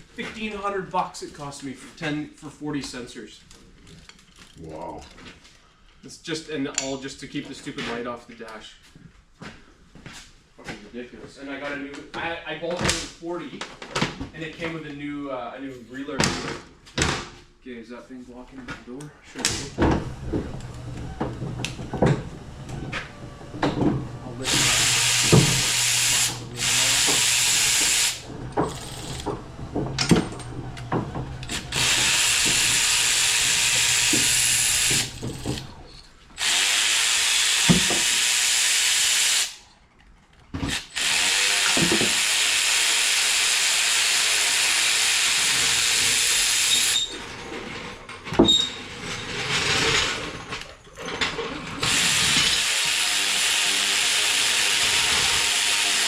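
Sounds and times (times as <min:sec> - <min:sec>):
power tool running: 0:19.7 - 0:39.7, 0:40.7 - 0:47.2, 0:51.8 - 0:56.0
metal clicks and clanks: 0:27.0 - 0:32.8.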